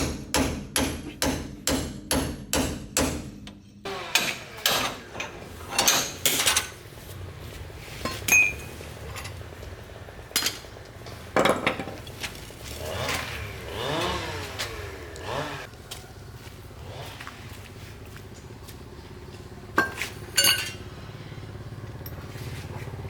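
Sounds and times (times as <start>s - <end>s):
metal tools clinking: 4.6s - 6.9s, 8.0s - 9.6s, 10.4s - 12.8s, 19.8s - 20.9s
ringing metal clink: 8.2s - 8.7s, 19.8s - 20.8s.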